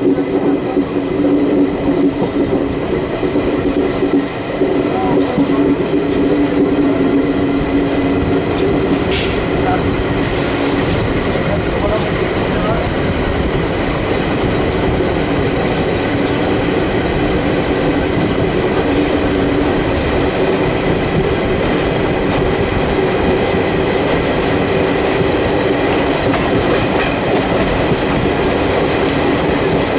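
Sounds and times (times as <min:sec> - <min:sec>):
train wheels rumbling on rail: 0:00.0 - 0:29.9
sharp track clicks: 0:13.5 - 0:29.9.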